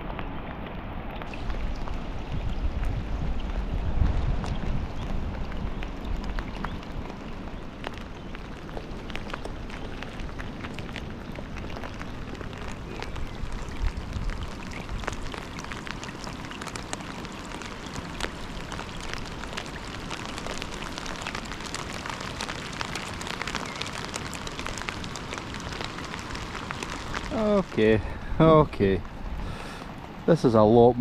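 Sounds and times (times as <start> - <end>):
heavy rain falling: 0.0 - 31.0.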